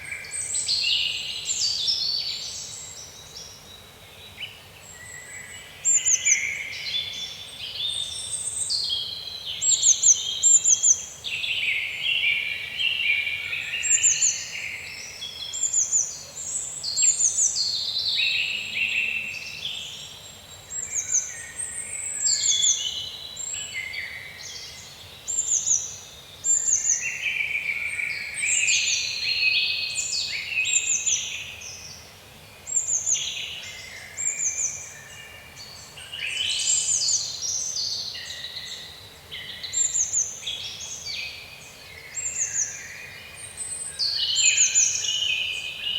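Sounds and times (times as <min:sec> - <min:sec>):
birds singing and chirping: 0:32.7 - 0:45.9.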